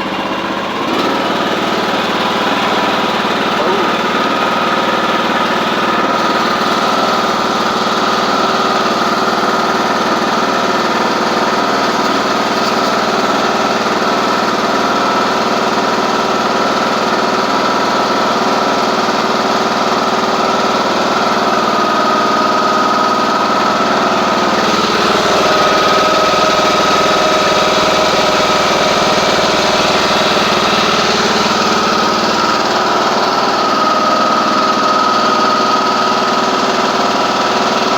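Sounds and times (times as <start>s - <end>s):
lawn tractor engine running: 0.0s - 37.9s
person talking: 3.6s - 4.1s.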